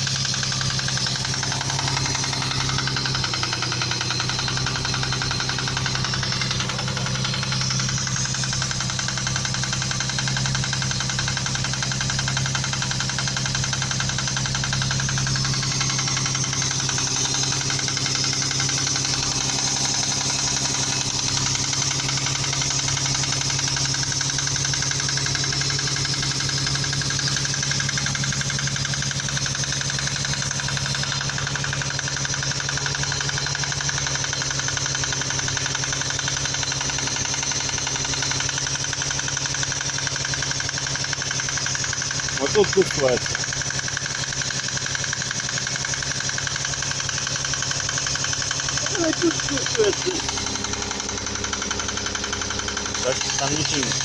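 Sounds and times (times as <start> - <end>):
engine idling: 0.0 - 54.0
rapid even engine knock: 0.0 - 54.0.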